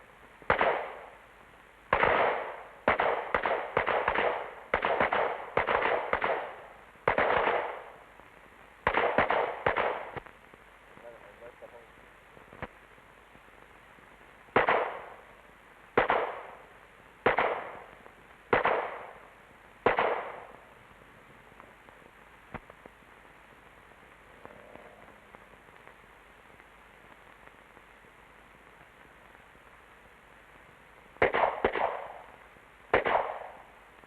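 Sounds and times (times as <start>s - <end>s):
pistol shots with echo: 0.5s - 1.1s, 1.9s - 8.0s, 8.8s - 10.2s, 14.6s - 15.2s, 16.0s - 16.6s, 17.2s - 17.9s, 18.5s - 19.2s, 19.8s - 20.5s, 31.2s - 33.7s.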